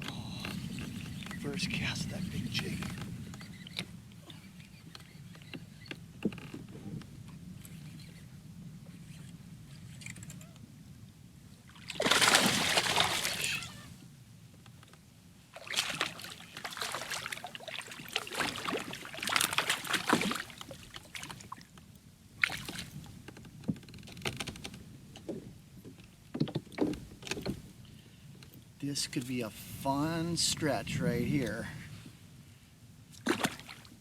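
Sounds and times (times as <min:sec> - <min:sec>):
water sloshing around kayak: 0:00.0 - 0:08.2, 0:11.6 - 0:14.0, 0:15.4 - 0:29.8, 0:33.1 - 0:34.0
knocks from the boat: 0:23.4 - 0:27.7.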